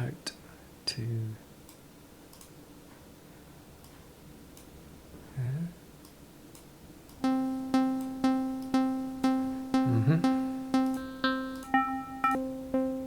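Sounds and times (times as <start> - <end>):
synthesizer pluck notes: 7.2 - 13.0.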